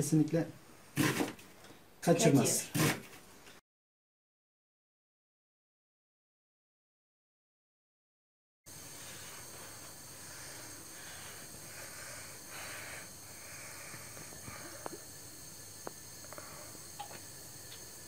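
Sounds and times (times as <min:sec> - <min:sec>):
background hiss: 0:08.7 - 0:18.0.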